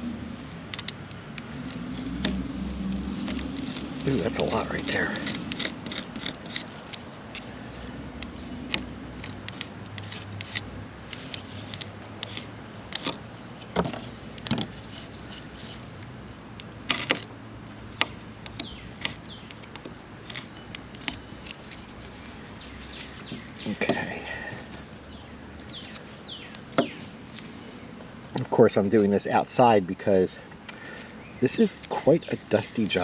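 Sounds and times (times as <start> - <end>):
blade cutting carpet fibers: 1.4 - 7.6, 8.2 - 13.2.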